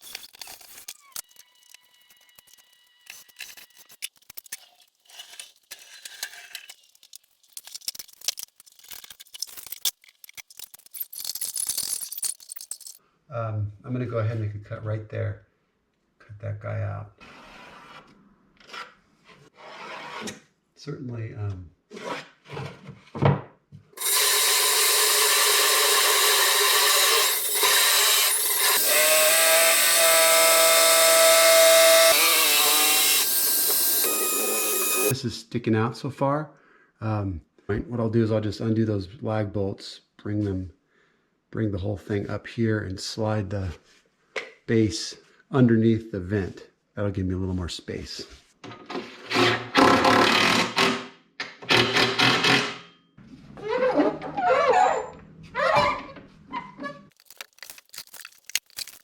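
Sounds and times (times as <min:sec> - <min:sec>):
metal parts clattering: 0:03.1 - 0:13.0, 0:57.1 - 0:59.0
power saw cutting metal: 0:24.0 - 0:35.2.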